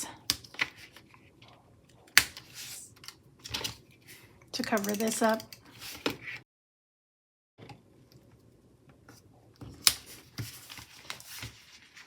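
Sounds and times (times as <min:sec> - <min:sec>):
paper sheets handled: 0:10.0 - 0:12.0.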